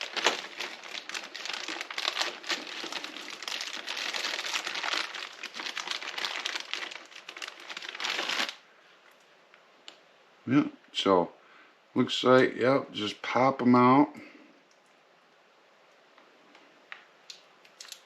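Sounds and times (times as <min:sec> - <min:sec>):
plastic bag crinkling: 0:00.0 - 0:08.6.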